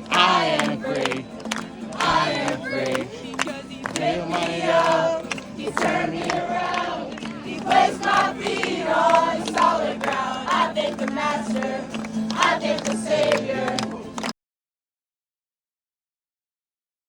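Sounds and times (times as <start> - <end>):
group singing a worship song: 0.0 - 14.0.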